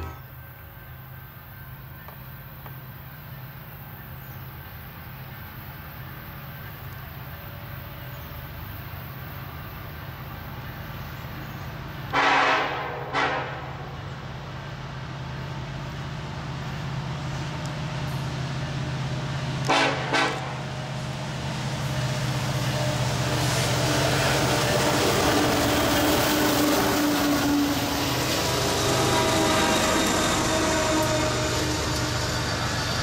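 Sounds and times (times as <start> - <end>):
locomotive engines droning: 0.0 - 33.0
wheels hissing on rail: 0.0 - 33.0
locomotive horn toots: 12.1 - 14.0, 19.6 - 20.7, 24.8 - 32.5.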